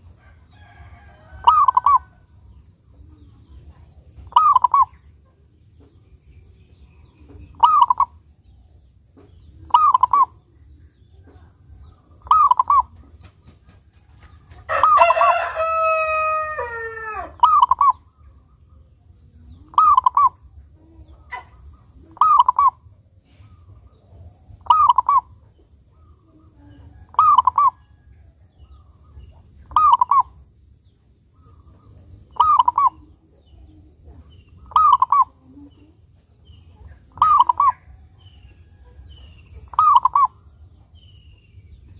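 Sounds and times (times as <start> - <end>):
rooster crowing: 0.1 - 2.2, 14.7 - 17.8
dove cooing: 0.6 - 2.2, 3.0 - 5.0, 7.1 - 8.2, 9.4 - 10.5, 12.1 - 13.2, 16.1 - 18.1, 19.4 - 28.1, 28.7 - 30.4, 31.4 - 36.0, 36.7 - 40.6.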